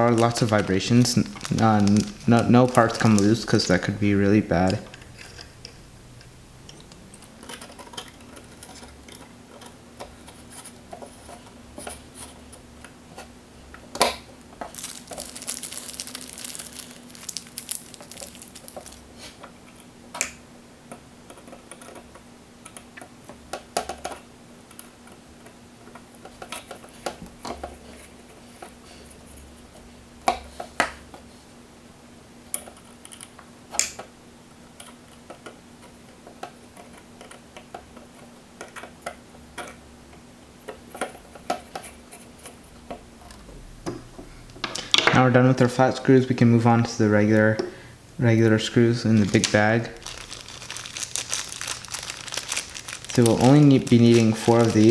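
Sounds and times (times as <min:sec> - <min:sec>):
scratchy rustling: 0:00.0 - 0:05.6, 0:14.7 - 0:19.4, 0:48.8 - 0:54.9
faint steady hum: 0:00.0 - 0:54.9.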